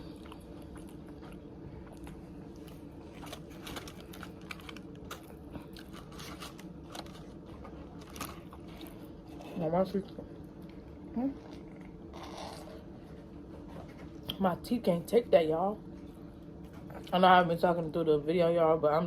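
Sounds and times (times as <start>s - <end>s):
chewing and crunching fried chicken: 0.0s - 14.4s
steady low hum: 0.0s - 19.0s.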